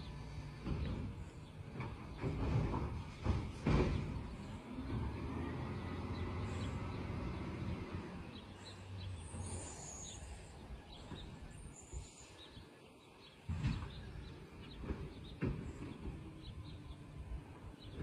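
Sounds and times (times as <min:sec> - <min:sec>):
distant truck engine: 0:00.0 - 0:18.0
small birds chirping: 0:00.0 - 0:18.0
dull thumps: 0:00.5 - 0:04.6.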